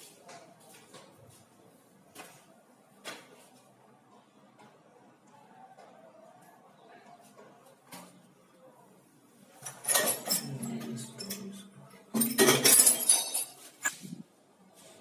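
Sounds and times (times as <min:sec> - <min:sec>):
hard objects clinking and clattering: 0:12.2 - 0:13.9.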